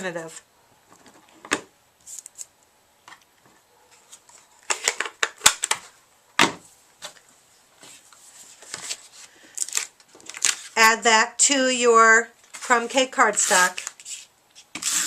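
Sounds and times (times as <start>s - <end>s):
paper scraping and rustling: 7.8s - 10.8s, 12.5s - 15.0s.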